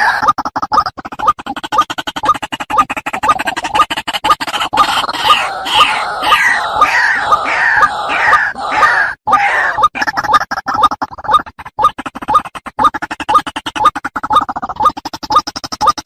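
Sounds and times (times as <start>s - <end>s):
bird harsh clicking grunts: 0.0s - 15.9s
bird loud falling croaks: 4.8s - 10.0s.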